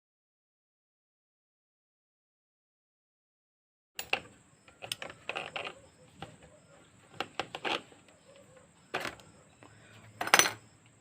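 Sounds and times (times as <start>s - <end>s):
small metallic clicks: 4.0s - 6.3s.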